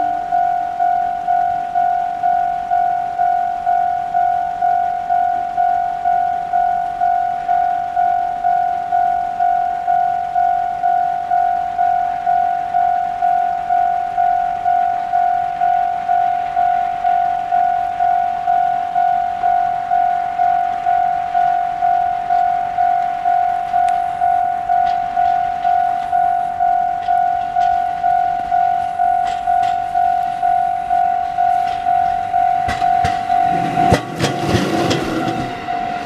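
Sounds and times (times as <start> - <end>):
level-crossing warning bell: 0.0 - 36.0
train wheels clattering: 23.6 - 36.0.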